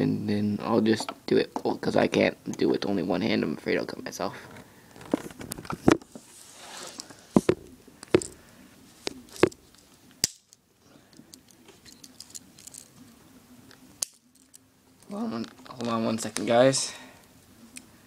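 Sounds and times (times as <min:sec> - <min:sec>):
small objects clicking and knocking: 0:07.4 - 0:08.4, 0:09.3 - 0:13.0, 0:14.0 - 0:15.8.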